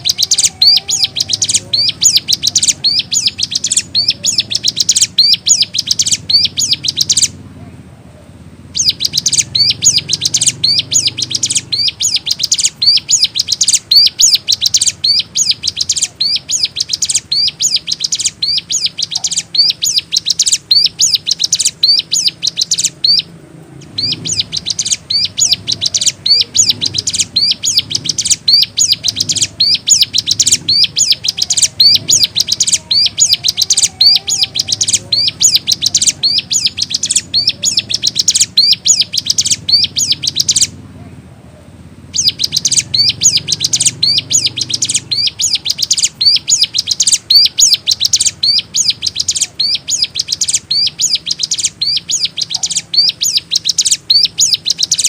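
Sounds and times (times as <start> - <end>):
bird chirping rapidly: 0.0 - 7.4, 8.6 - 40.8, 41.9 - 55.0.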